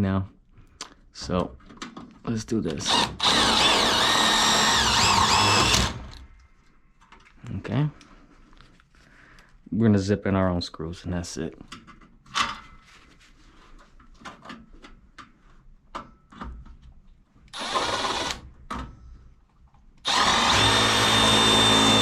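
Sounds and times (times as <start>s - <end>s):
power drill driving screws: 2.8s - 6.2s, 17.5s - 18.4s, 20.0s - 22.0s.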